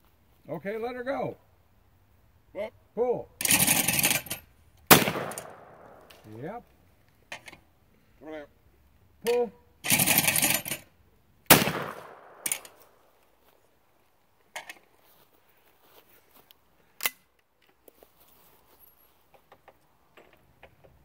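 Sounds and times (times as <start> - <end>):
gun metallic clicks: 3.4 - 6.2, 11.5 - 12.9, 17.0 - 17.8
shotgun shot: 4.9 - 6.0, 11.5 - 12.8.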